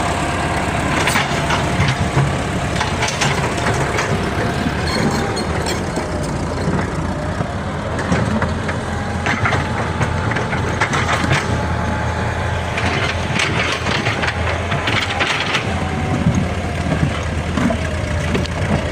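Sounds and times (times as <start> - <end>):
bulldozer diesel engine running: 0.0 - 18.9.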